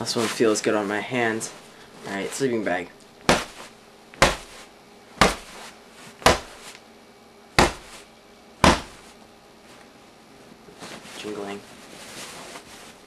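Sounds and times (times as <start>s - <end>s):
fist punching sleeping bag: 3.2s - 5.6s, 6.2s - 6.6s, 7.6s - 8.0s, 8.6s - 9.0s.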